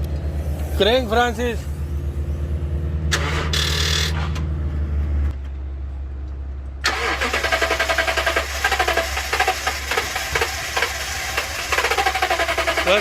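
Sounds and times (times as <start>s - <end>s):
starter motor cranking engine: 3.1s - 4.4s, 6.8s - 13.0s.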